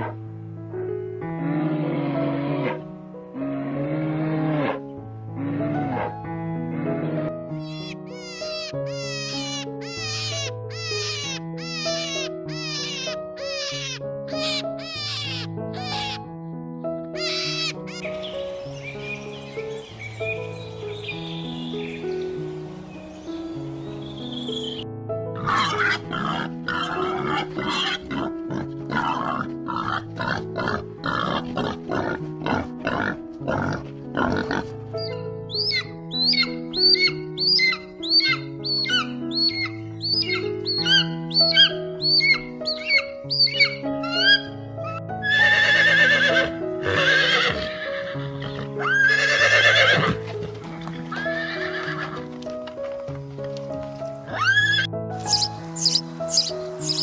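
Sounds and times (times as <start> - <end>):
background music: 0.0 - 57.0
farm animal calling: 7.6 - 16.3, 17.2 - 22.3, 25.4 - 50.3, 54.2 - 57.0
horse whinnying: 35.0 - 44.5, 45.2 - 50.2, 51.1 - 52.2, 54.3 - 57.0.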